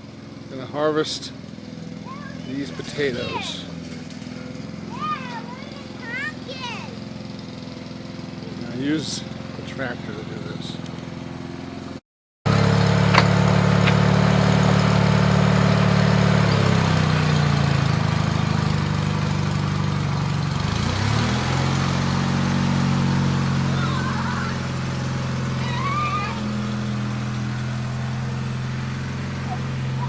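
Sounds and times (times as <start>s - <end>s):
tractor engine running under load: 0.0s - 30.0s.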